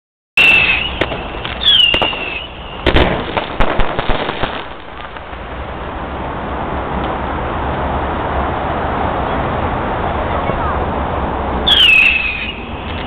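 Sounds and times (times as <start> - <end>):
firework whistles: 0.4 - 5.3, 11.6 - 13.0
firework bangs and crackling: 0.4 - 7.4, 11.6 - 13.0.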